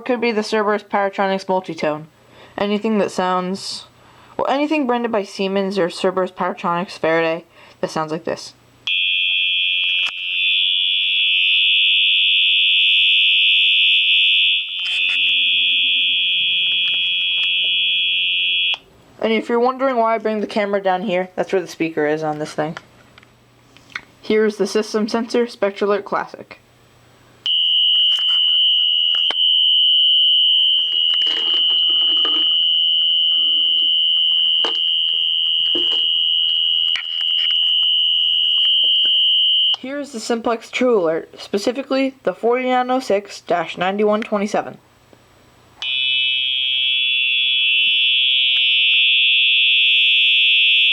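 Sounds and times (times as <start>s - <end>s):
high-pitched alarm tone: 8.9s - 18.8s, 27.5s - 39.8s, 45.8s - 50.9s.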